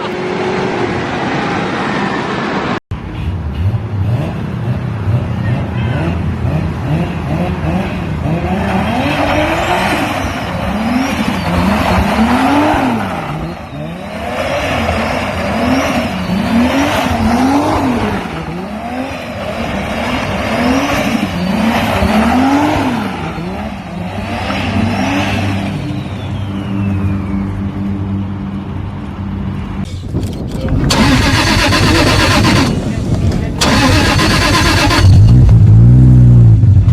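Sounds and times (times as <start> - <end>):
car engine revving: 3.7 - 27.0, 30.2 - 36.9.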